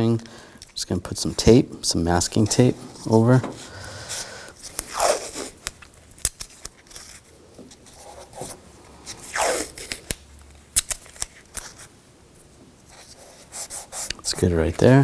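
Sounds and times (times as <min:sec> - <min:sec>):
tape ripping: 0:02.6 - 0:11.9.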